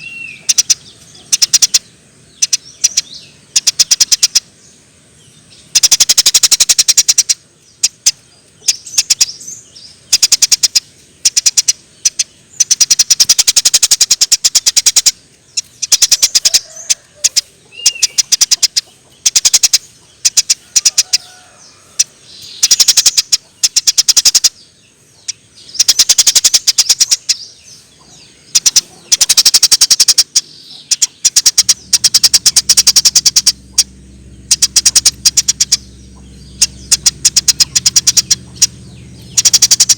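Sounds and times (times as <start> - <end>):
sparrows chirping: 0.0 - 39.9
low hum: 29.3 - 39.9.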